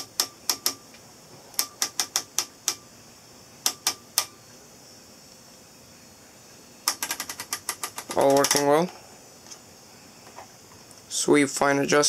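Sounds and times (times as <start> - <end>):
rotary switch clicking: 0.0 - 0.8, 1.6 - 2.8, 3.6 - 4.3, 6.9 - 8.8.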